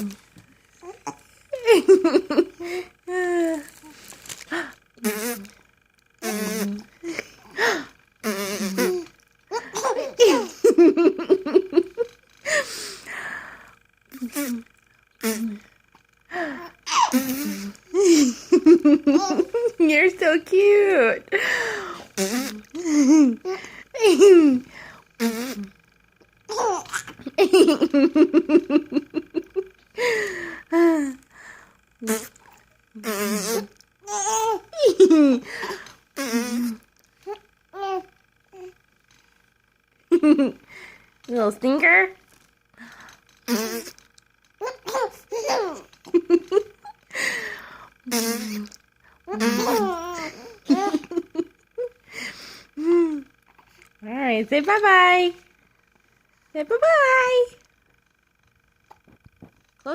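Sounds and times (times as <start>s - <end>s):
lip fart noises: 5.0s - 5.6s, 6.2s - 6.9s, 8.2s - 9.2s, 14.1s - 15.6s, 16.9s - 17.8s, 22.1s - 22.9s, 25.2s - 25.8s, 32.0s - 33.8s, 36.2s - 36.9s, 43.4s - 44.1s, 48.0s - 51.0s
baby laughing: 8.8s - 12.1s, 16.8s - 19.8s, 26.5s - 28.8s, 34.0s - 35.5s, 44.6s - 47.0s, 49.3s - 51.4s.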